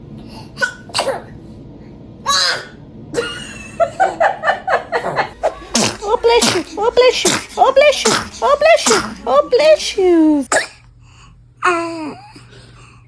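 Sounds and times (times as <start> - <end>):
baby sneezing: 0.5 - 1.4, 2.3 - 2.8, 5.4 - 10.8.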